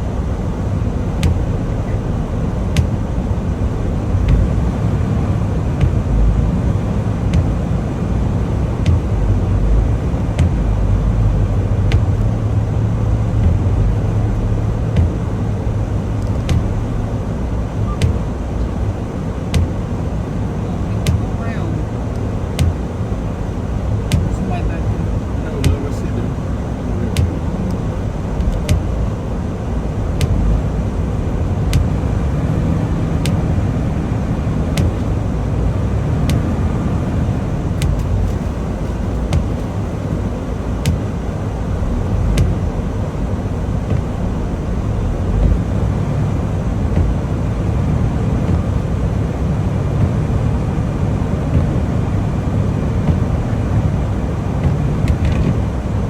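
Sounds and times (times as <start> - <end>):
truck engine and road rumble: 0.0 - 56.0.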